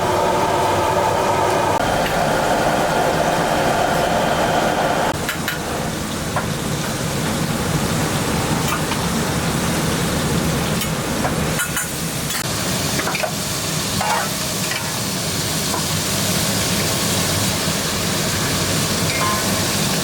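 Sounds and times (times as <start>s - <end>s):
low hum: 0.0s - 5.2s
food sizzling in hot oil: 5.2s - 20.0s
metal utensils clinking: 19.0s - 19.6s.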